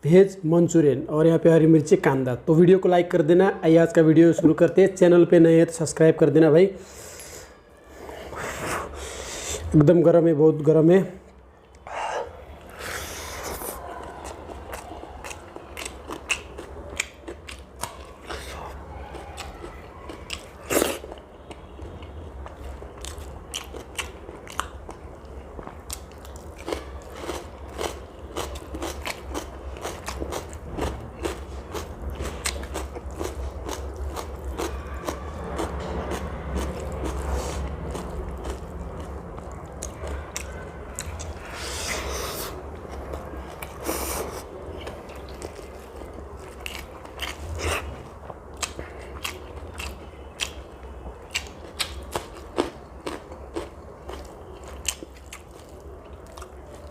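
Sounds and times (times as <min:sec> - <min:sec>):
food crunching: 0:11.6 - 0:56.9
chewing and biting food: 0:11.7 - 0:56.9.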